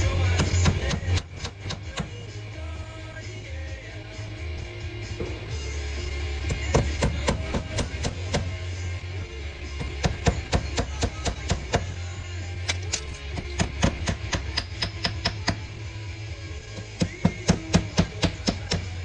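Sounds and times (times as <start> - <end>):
music: 0.0 - 19.0
hammer striking nails: 0.3 - 2.2, 6.4 - 8.6, 9.8 - 11.9, 12.7 - 15.7, 16.8 - 19.0.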